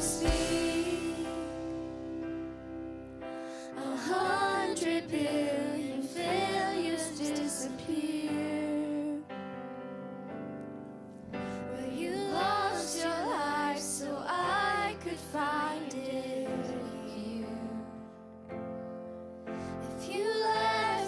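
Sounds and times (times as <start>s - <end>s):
sustained keyboard chords: 0.0s - 3.6s.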